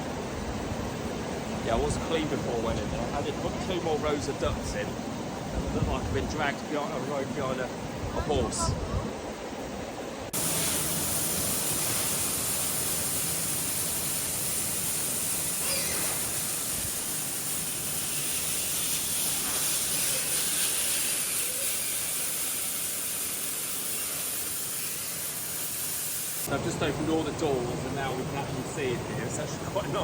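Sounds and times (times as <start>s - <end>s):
hiss of rushing air: 8.8s - 27.1s
thin high whine: 10.1s - 30.0s.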